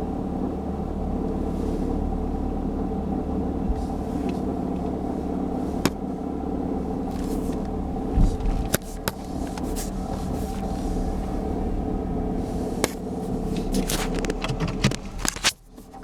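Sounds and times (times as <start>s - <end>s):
car engine idling with rattle: 0.0s - 16.0s
low thump: 8.1s - 9.2s.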